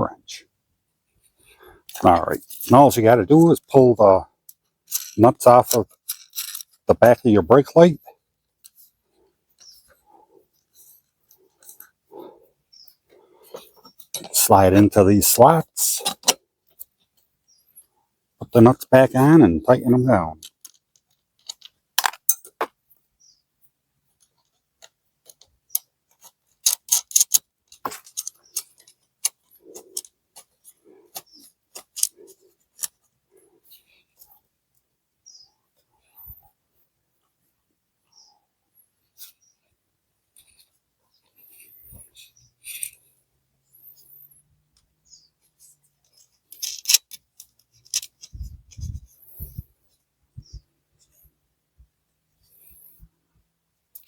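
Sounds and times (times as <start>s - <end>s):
small metallic clicks and taps: 4.5s - 6.8s, 20.4s - 22.8s, 24.2s - 32.2s, 46.0s - 49.0s.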